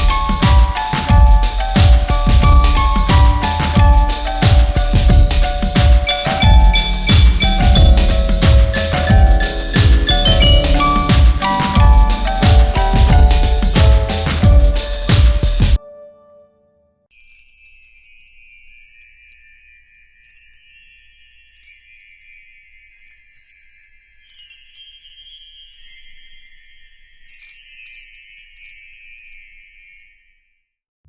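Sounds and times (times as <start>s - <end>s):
sleigh bells jingling: 0.0s - 15.8s.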